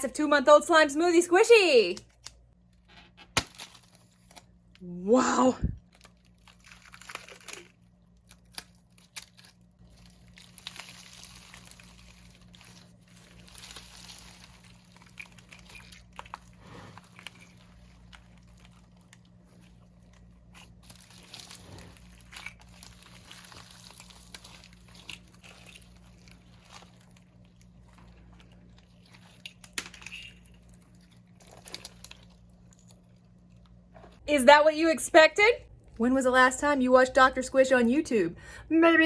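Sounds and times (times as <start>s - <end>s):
slime squelching: 3.4s - 34.2s.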